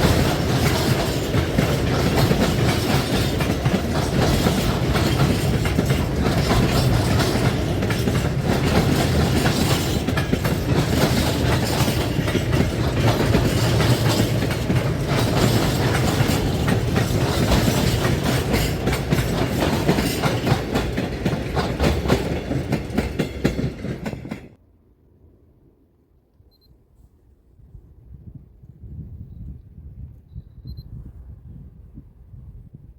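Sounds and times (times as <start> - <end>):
train wheels clacking over rail joints: 0.0 - 24.6.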